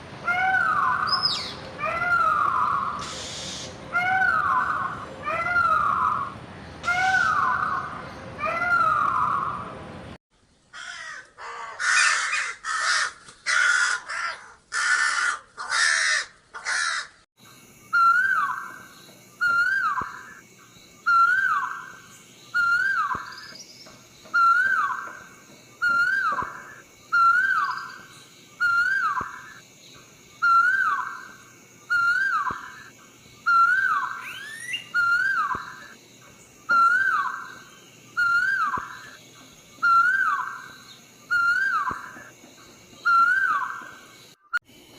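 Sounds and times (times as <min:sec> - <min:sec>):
harsh cawing bird calls: 0:00.2 - 0:09.7, 0:10.7 - 0:17.3.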